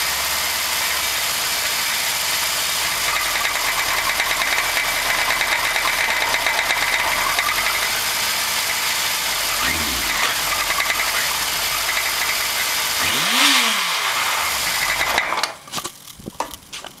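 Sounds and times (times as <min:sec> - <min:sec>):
motorcycle engine revving: 0:00.0 - 0:15.6
engine clicks: 0:10.2 - 0:16.6.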